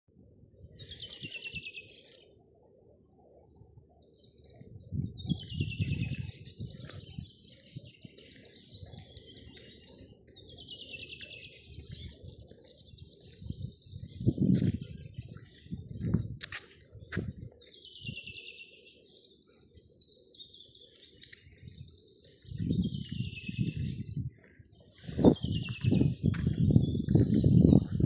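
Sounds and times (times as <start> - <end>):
songbird singing trilled phrases: 4.7 - 14.4.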